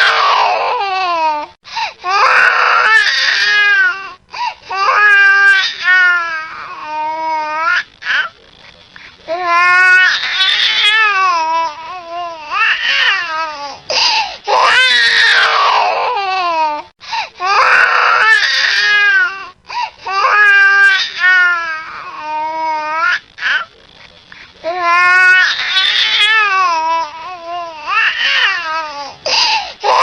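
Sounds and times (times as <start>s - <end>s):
baby crying: 0.0s - 8.4s, 9.3s - 23.7s, 24.6s - 30.0s
baby gasping for breath: 1.7s - 2.0s, 13.9s - 14.4s, 17.0s - 17.4s, 29.2s - 29.8s.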